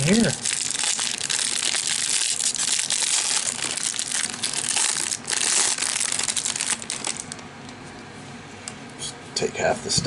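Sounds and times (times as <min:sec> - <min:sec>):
plastic wrapper crinkling and tearing: 0:00.0 - 0:07.5.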